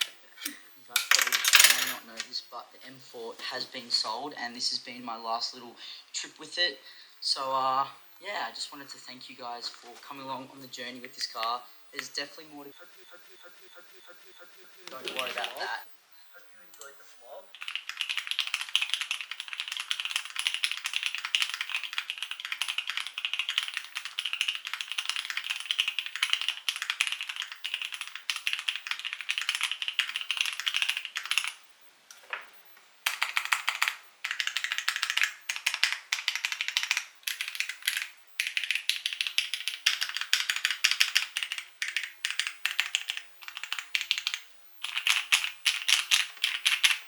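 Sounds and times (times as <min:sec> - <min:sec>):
mechanical keyboard typing: 0:14.9 - 0:15.6, 0:17.5 - 0:31.6, 0:33.0 - 0:47.0.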